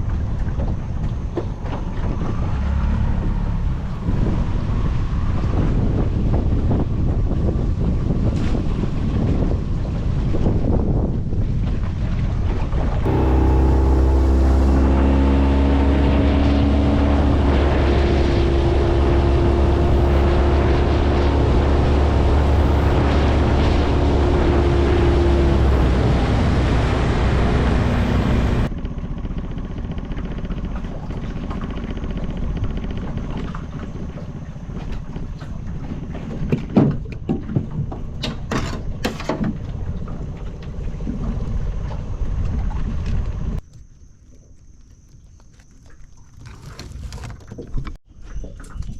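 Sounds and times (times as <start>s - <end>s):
boat motor running: 0.0s - 5.4s, 12.8s - 38.2s
wind buffeting microphone: 0.0s - 43.6s.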